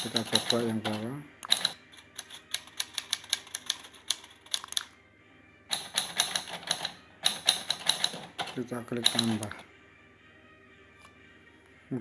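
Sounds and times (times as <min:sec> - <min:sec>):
typewriter keystrokes clacking: 0:00.0 - 0:04.9, 0:05.7 - 0:09.5.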